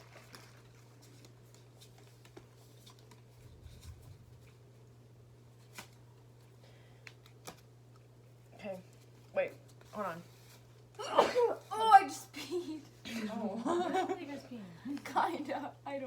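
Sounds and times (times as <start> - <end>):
cards rustling and ticking: 0.0 - 11.0
low steady hum: 0.0 - 16.0.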